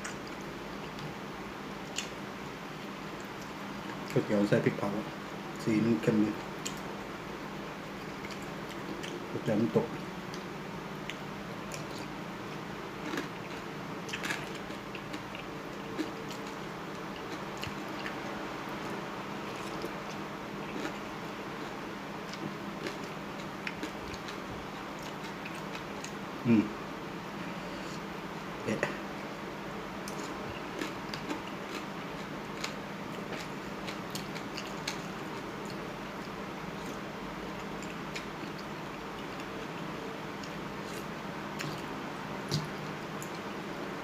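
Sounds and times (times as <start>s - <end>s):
steady background hum: 0.0s - 44.0s
person chewing noodles: 7.8s - 9.2s, 10.3s - 18.2s, 18.8s - 26.2s, 30.0s - 43.5s.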